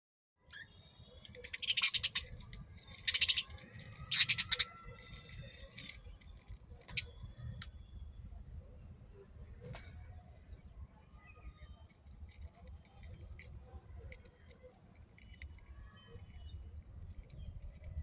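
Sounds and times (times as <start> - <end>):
budgerigars chirping: 1.4 - 2.3, 3.0 - 3.5, 4.1 - 5.0
loud harsh bird calls: 1.4 - 5.9.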